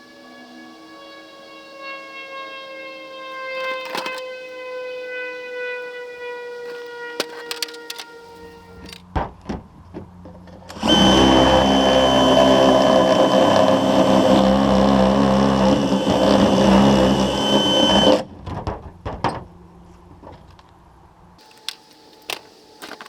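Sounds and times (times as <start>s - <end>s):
power tool whining: 3.4s - 4.4s, 6.5s - 9.0s, 10.7s - 18.3s.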